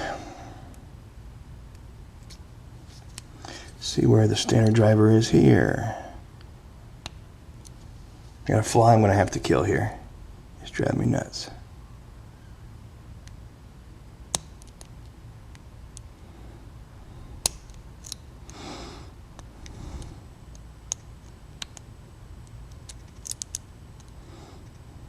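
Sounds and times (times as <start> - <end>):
lock pick clicking in padlock: 17.4 - 18.2, 22.7 - 24.1.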